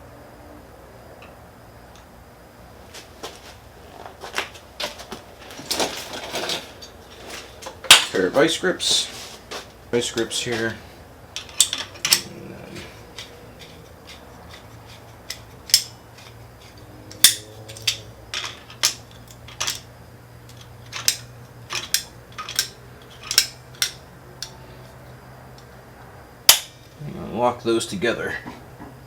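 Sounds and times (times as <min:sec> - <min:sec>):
steady low hum: 0:00.0 - 0:29.0
metal hand tools clinking: 0:11.4 - 0:19.9, 0:20.5 - 0:24.6.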